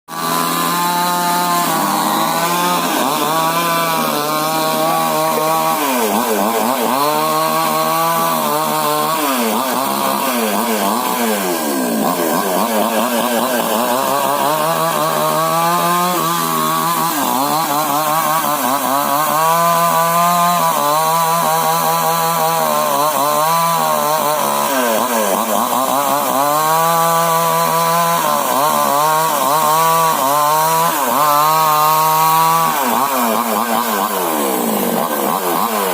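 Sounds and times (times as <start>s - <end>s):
chainsaw cutting wood: 0.1s - 35.9s.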